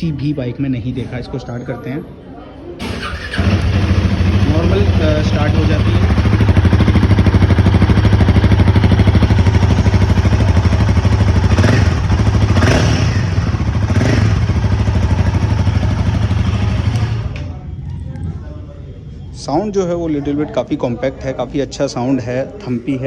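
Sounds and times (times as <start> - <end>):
motorcycle engine idling and revving: 2.8 - 17.7.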